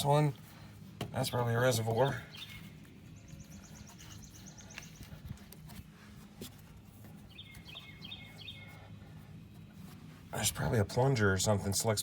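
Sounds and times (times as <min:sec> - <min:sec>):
steady low hum: 0:00.0 - 0:12.0
small birds trilling: 0:01.2 - 0:05.5, 0:07.1 - 0:09.3.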